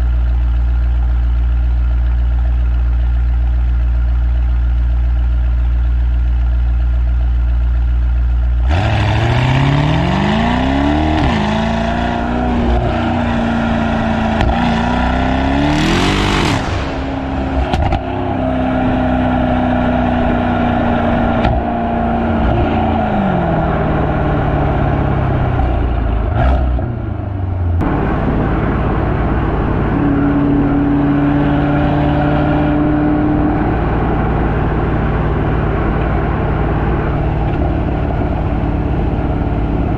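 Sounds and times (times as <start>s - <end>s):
car engine revving: 8.6s - 39.9s.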